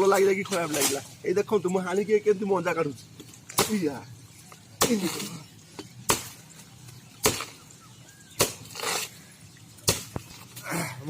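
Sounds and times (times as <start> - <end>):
blade chopping plant trunk: 4.8 - 6.4, 7.2 - 7.6, 8.3 - 9.1, 9.8 - 10.3.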